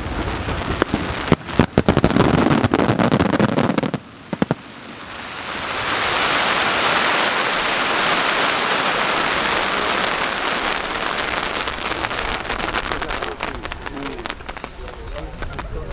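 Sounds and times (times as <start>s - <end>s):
fireworks burst: 0.0s - 15.9s
crowd applause: 7.9s - 15.9s.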